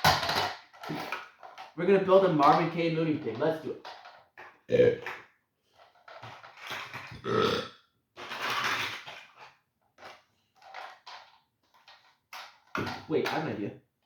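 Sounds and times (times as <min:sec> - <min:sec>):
person making burp-like noises: 0:04.7 - 0:05.2, 0:07.0 - 0:07.8.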